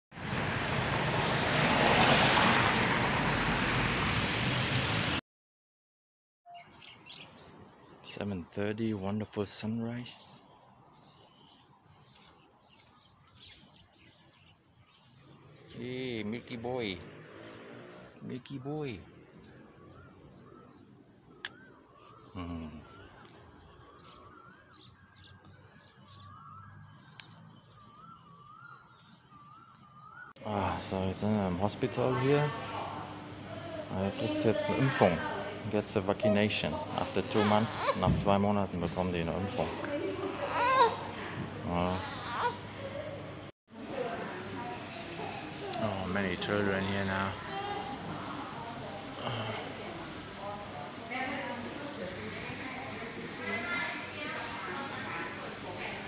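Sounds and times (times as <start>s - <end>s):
birds chirping: 6.5s - 56.0s
low voice: 22.4s - 23.0s.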